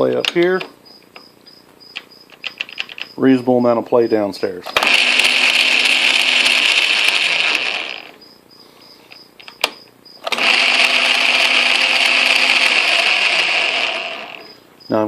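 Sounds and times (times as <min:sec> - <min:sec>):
lathe motor and gears whirring: 0:04.7 - 0:08.1, 0:10.2 - 0:14.5.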